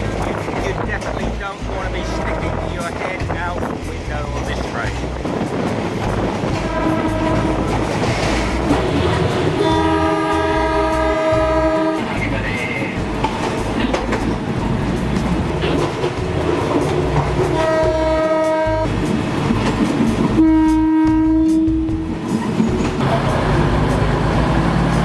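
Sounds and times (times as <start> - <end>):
train rumble and rail clatter: 0.0 - 25.0
train horn: 6.5 - 12.2, 17.4 - 18.9, 20.4 - 22.0.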